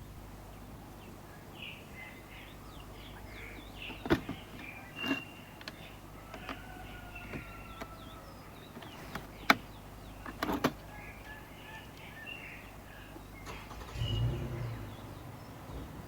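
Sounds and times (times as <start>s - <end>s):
sharp clicks and knocks: 3.8s - 6.6s, 8.7s - 10.9s.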